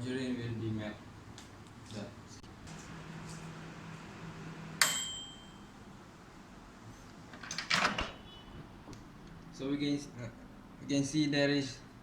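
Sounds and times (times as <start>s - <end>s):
microwave oven humming: 2.1s - 8.4s
microwave ding: 4.8s - 5.8s.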